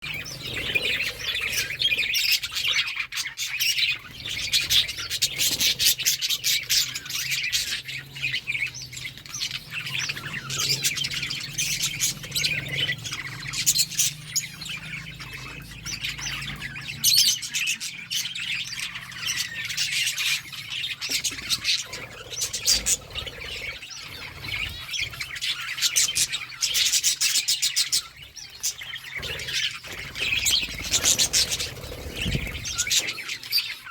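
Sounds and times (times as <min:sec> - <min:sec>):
budgerigars chirping: 0:00.0 - 0:33.9.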